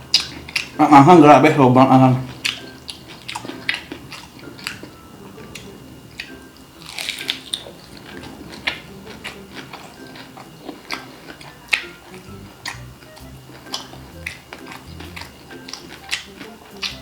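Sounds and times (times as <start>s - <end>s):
crunching crisp food: 0.0s - 17.0s.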